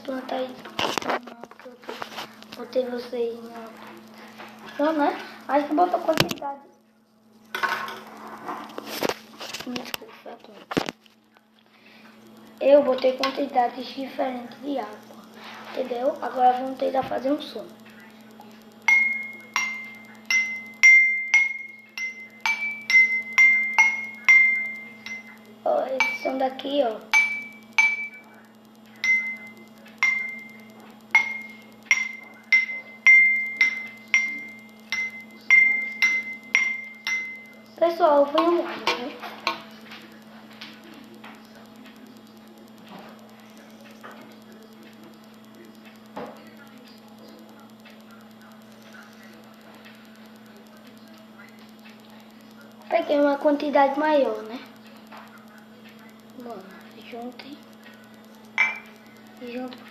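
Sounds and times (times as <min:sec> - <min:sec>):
low electrical hum: 0:00.0 - 0:59.9
water glasses ringing when struck: 0:18.9 - 0:25.4, 0:27.2 - 0:28.2, 0:29.0 - 0:30.6, 0:31.2 - 0:37.5, 0:58.6 - 0:59.0.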